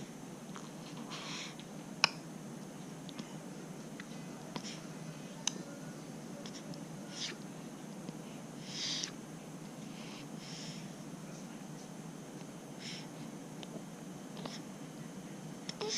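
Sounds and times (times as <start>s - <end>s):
steady low hum: 0.0s - 15.9s.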